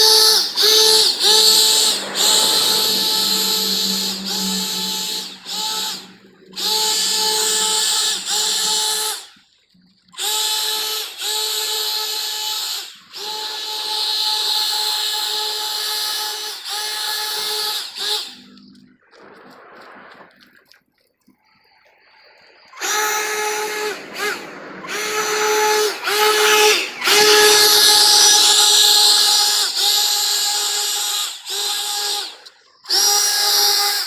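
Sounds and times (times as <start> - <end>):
leaf blower running: 0.0 - 9.3, 22.8 - 34.0.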